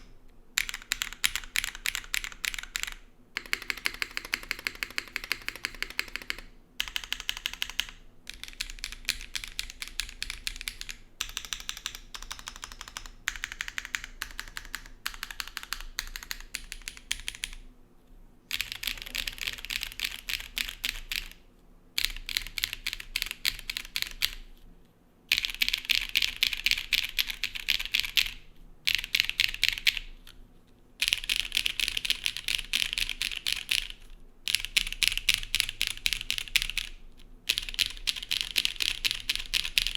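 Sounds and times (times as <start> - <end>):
mechanical keyboard typing: 0.0 - 17.6, 18.5 - 21.4, 22.0 - 24.5, 25.3 - 30.4, 31.0 - 39.9.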